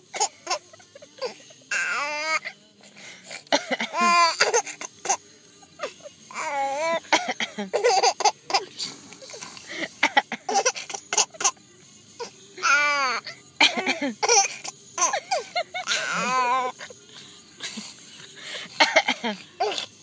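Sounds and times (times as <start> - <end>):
child coughing: 7.1 - 8.8, 13.6 - 15.2, 18.8 - 20.0.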